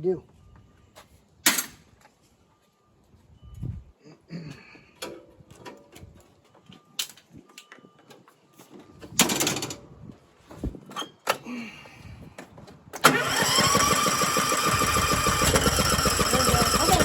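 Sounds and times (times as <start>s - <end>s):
mower engine clicks: 13.0s - 17.0s
riding mower engine running: 13.0s - 17.0s.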